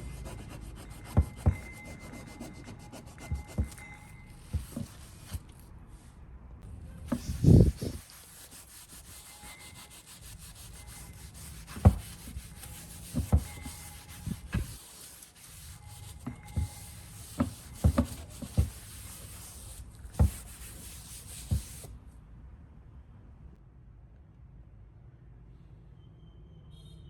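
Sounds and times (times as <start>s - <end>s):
rubbing and handling: 0.0s - 5.8s, 7.1s - 22.0s.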